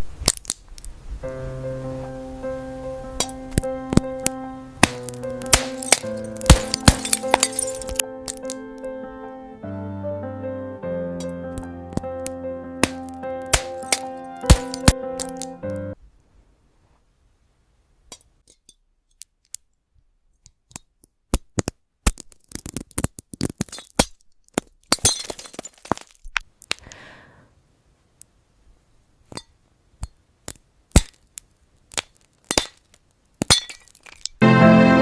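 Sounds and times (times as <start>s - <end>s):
glass cracking and crunching: 0.2s - 0.9s, 4.8s - 8.6s, 12.8s - 15.5s, 21.4s - 26.8s, 30.4s - 34.4s.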